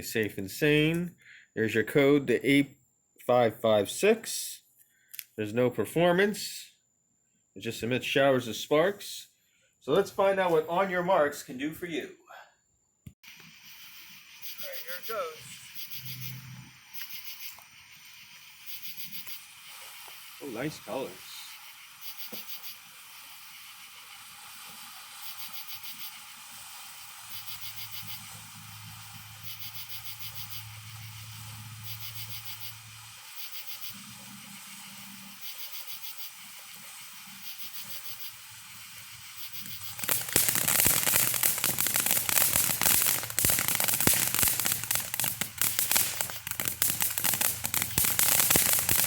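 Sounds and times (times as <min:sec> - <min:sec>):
loud dense crackling: 0:13.2 - 0:21.5, 0:39.4 - 0:49.0
firework fountain hissing: 0:13.2 - 0:49.0.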